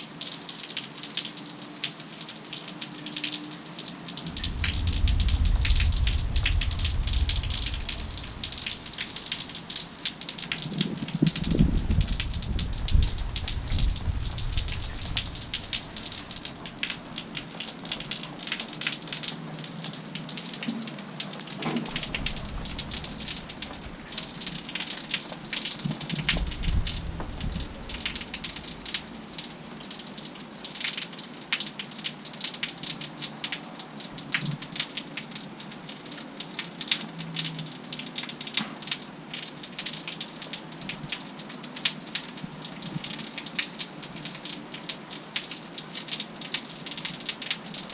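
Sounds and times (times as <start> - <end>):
heavy rain patter: 0.0 - 47.9
low rumble: 4.3 - 9.9, 11.3 - 16.5, 22.0 - 24.0.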